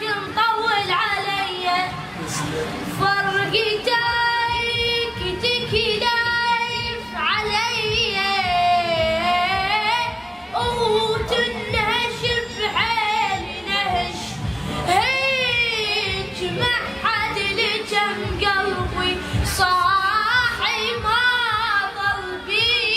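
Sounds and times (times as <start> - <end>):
high voice singing: 0.0 - 22.9
percussion beat: 3.5 - 22.9.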